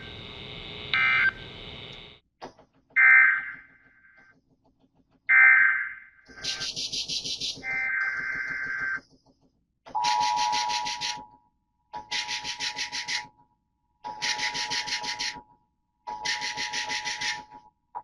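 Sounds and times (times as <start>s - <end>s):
screechy digital data bursts: 0.0s - 2.2s
steady tone: 0.0s - 2.2s.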